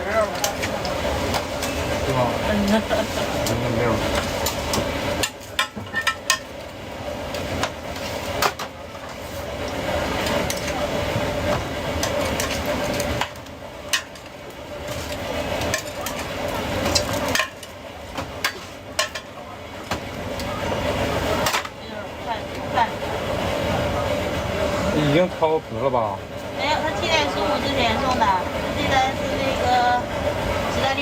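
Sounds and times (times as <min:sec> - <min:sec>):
steady hum: 0:00.0 - 0:31.0
metal utensils knocking on pots: 0:02.6 - 0:06.5.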